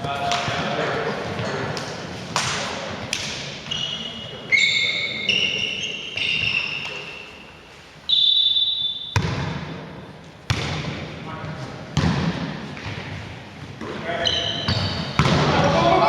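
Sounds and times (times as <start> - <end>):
volleyball strikes: 0.0 - 3.8, 8.9 - 11.1, 12.0 - 13.2, 14.6 - 15.8
high shoe squeals: 3.7 - 9.2, 14.1 - 15.2.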